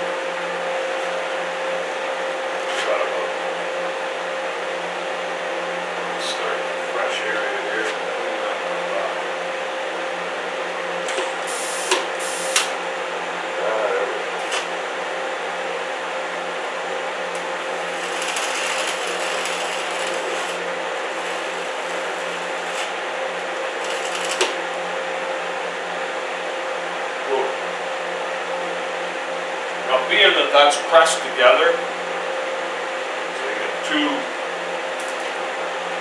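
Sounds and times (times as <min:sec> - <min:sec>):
steady hum: 0:00.0 - 0:36.0
welder arc crackling: 0:00.1 - 0:02.9, 0:11.0 - 0:12.9, 0:17.3 - 0:25.0, 0:35.0 - 0:36.0
sharp welding pops: 0:11.1 - 0:12.8, 0:17.4 - 0:23.0, 0:23.7 - 0:24.8, 0:35.0 - 0:35.4.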